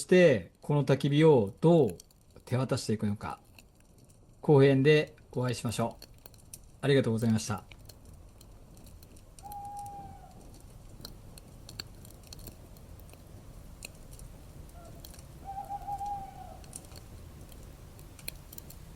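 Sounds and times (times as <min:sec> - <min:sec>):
faint crackles and clicks: 0:00.0 - 0:18.9
bird whistling: 0:09.4 - 0:10.4, 0:14.8 - 0:16.7.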